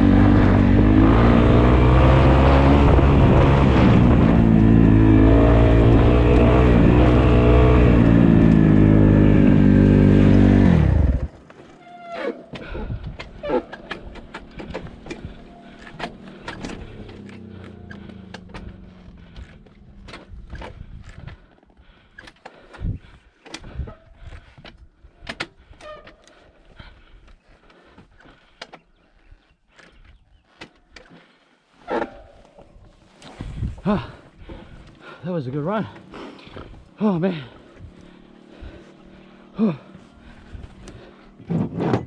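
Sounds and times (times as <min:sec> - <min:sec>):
dirt bike engine running: 0:00.0 - 0:11.4, 0:12.8 - 0:21.5, 0:35.8 - 0:41.6.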